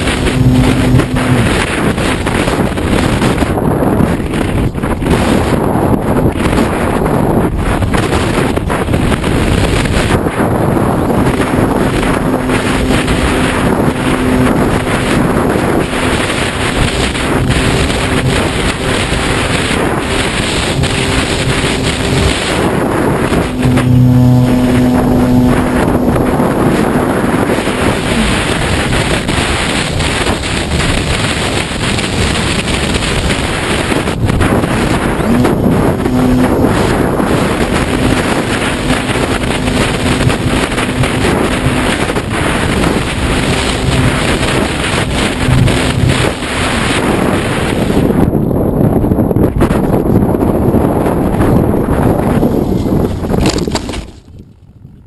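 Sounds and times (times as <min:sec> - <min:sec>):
electric motor whining: 0:00.0 - 0:02.6, 0:10.8 - 0:29.0, 0:34.8 - 0:46.6
strong wind rushing: 0:00.0 - 0:55.0.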